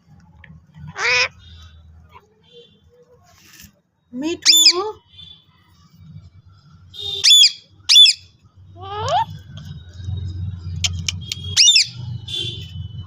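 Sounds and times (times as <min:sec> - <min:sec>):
parrot screeching: 0:00.9 - 0:01.4, 0:04.4 - 0:04.8, 0:07.2 - 0:08.2, 0:11.6 - 0:12.0.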